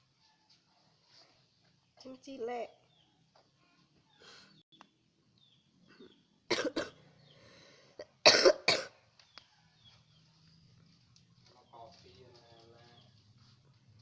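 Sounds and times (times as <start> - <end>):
person coughing: 6.5 - 7.0, 8.2 - 9.0.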